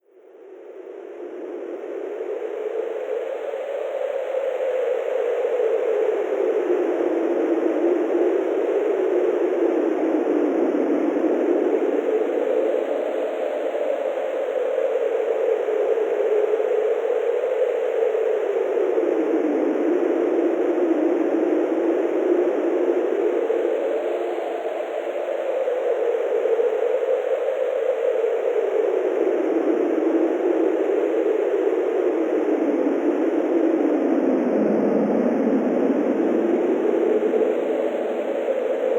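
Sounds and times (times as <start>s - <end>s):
synthesized wind gusts: 15.1s - 38.9s.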